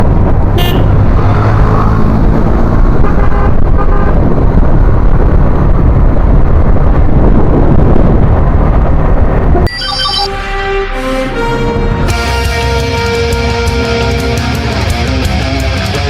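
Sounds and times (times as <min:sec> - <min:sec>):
loud low traffic rumble: 0:00.0 - 0:09.7, 0:10.4 - 0:16.0
vehicle horns honking: 0:00.6 - 0:01.0, 0:03.0 - 0:04.2.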